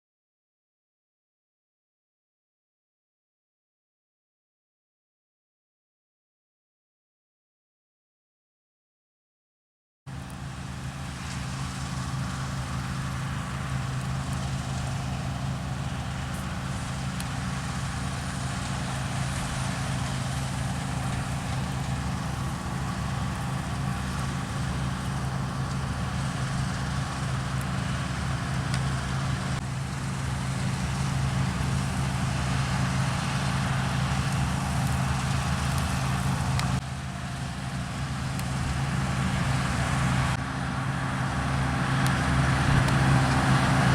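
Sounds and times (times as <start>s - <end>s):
diesel harvest machinery engines: 10.1s - 43.9s.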